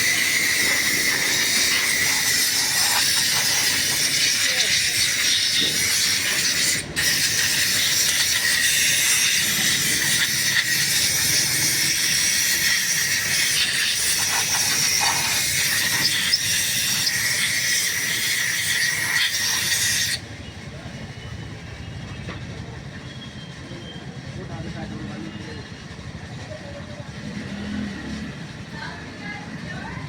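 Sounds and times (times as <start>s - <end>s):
high-pressure jet hissing: 0.0s - 20.2s.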